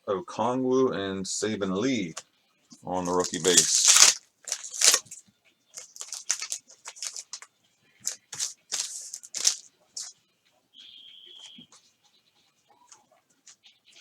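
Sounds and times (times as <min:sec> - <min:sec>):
cards and wrapper rustling: 0:03.0 - 0:05.2, 0:05.8 - 0:07.4, 0:08.0 - 0:10.1.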